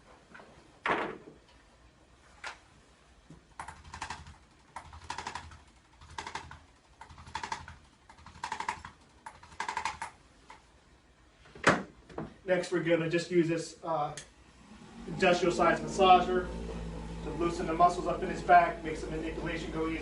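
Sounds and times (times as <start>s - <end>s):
adjusting instrument rapid clicks: 3.6s - 10.6s.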